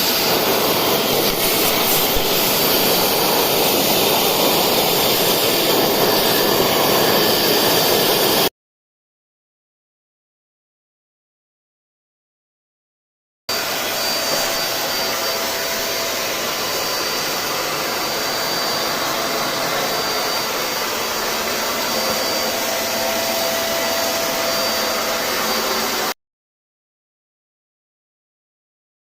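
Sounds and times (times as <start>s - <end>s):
vacuum cleaner running: 0.0s - 8.5s, 13.5s - 26.2s.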